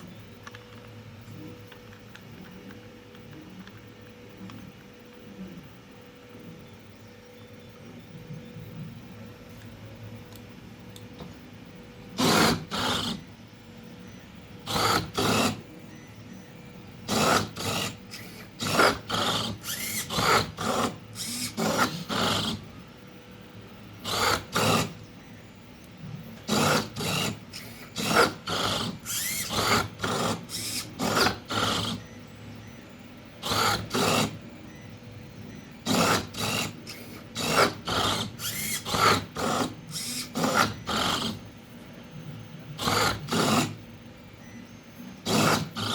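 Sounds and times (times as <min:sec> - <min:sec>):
servo motors whirring: 0:12.1 - 0:13.3, 0:14.6 - 0:15.7, 0:17.0 - 0:22.8, 0:24.0 - 0:25.1, 0:26.2 - 0:32.8, 0:33.4 - 0:34.4, 0:35.8 - 0:41.6, 0:42.7 - 0:43.8, 0:45.2 - 0:45.9.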